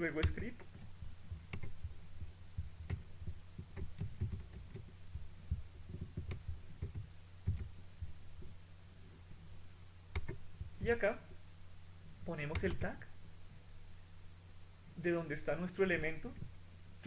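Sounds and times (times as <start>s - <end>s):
steady low hum: 0.0s - 17.0s
mouse and keyboard clicks: 0.2s - 1.8s, 2.8s - 7.7s, 10.1s - 10.4s, 12.5s - 12.8s.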